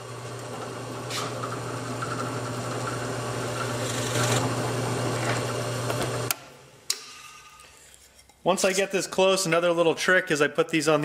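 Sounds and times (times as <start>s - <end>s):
electric drill boring into wood: 0.1s - 6.3s.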